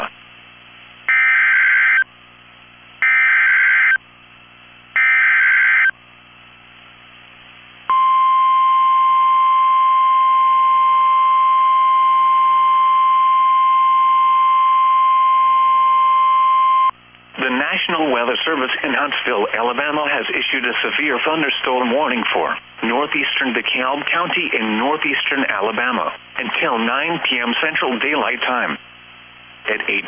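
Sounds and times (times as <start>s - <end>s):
steady warning alarm tone: 1.1s - 2.1s, 3.0s - 4.0s, 5.0s - 6.0s.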